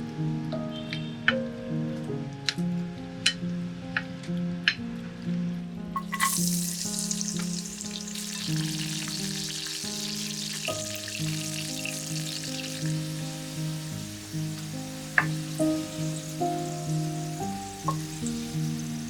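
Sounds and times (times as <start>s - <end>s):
food sizzling in a hot pan: 6.0s - 19.0s.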